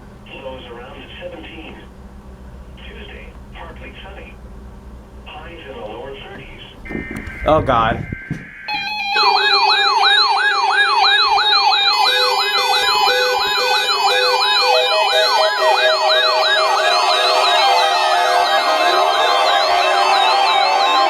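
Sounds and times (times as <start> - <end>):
steady electronic tones: 0.0 - 21.0
sweeping siren-like alarm tone: 6.8 - 21.0
high warbling tone: 6.9 - 21.0.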